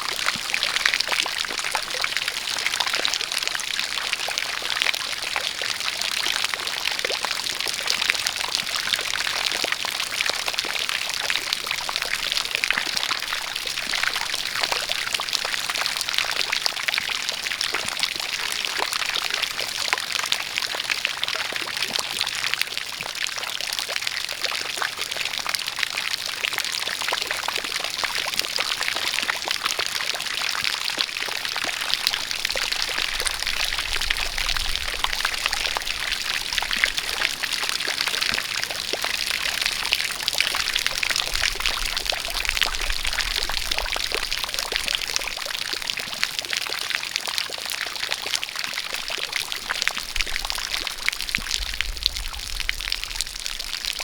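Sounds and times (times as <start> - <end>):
rain drops pattering: 0.0 - 54.0
water pouring from spout: 0.0 - 54.0.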